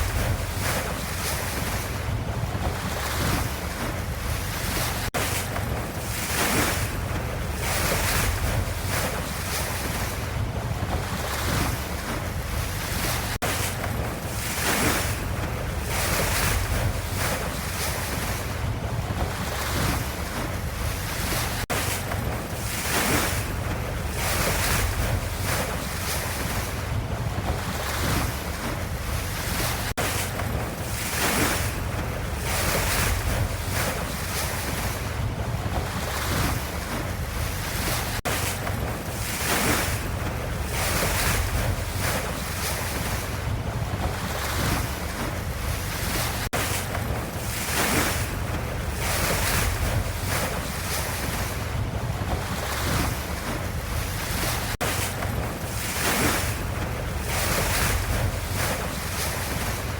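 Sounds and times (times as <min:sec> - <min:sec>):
ocean waves: 0:00.0 - 0:59.9.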